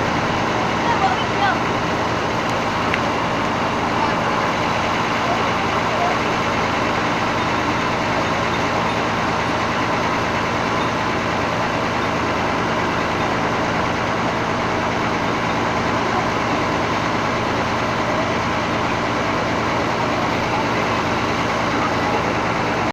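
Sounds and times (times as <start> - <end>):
bus engine idling: 0.0 - 22.9.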